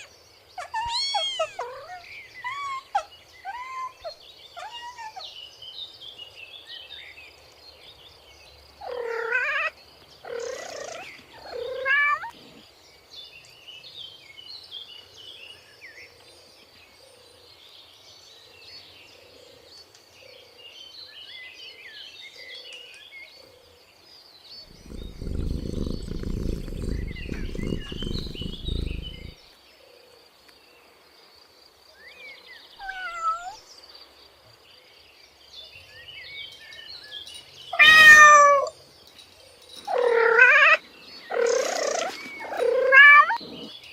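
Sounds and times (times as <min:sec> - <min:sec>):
faint bird chirps: 0:00.0 - 0:05.7, 0:24.6 - 0:30.8, 0:35.6 - 0:43.9
cat meowing: 0:00.8 - 0:02.0, 0:24.8 - 0:29.4, 0:32.8 - 0:33.6, 0:37.8 - 0:38.7, 0:39.9 - 0:40.8, 0:42.4 - 0:43.4
cat purring: 0:24.7 - 0:29.4.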